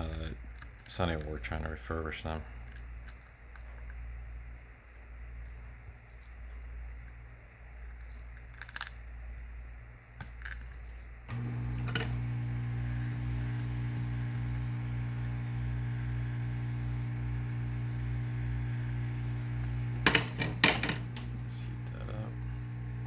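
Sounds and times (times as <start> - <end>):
heat gun humming: 11.3 - 23.0.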